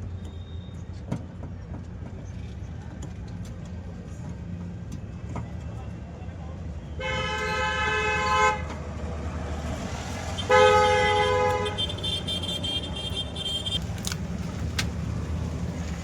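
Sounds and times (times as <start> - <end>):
low traffic rumble: 0.0 - 16.0
vehicle horn honking: 7.0 - 8.7, 10.3 - 14.0.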